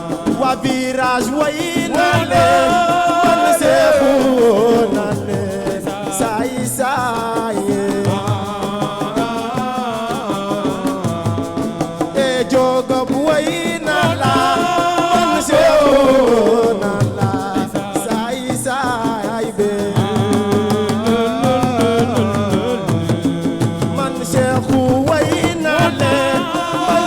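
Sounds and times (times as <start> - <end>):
steady drum rhythm: 0.0 - 27.0.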